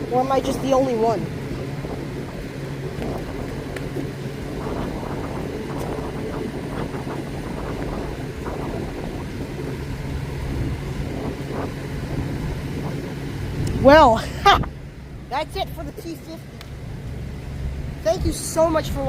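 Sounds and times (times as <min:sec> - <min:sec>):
low hum of vehicle traffic: 0:00.0 - 0:19.0.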